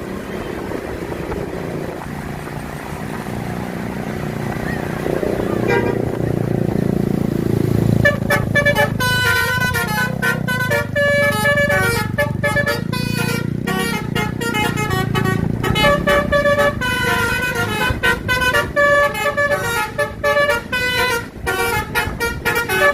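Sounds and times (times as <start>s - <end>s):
bus engine rumble: 0.0s - 22.9s
musical air horn melody: 5.6s - 6.2s, 7.9s - 22.9s.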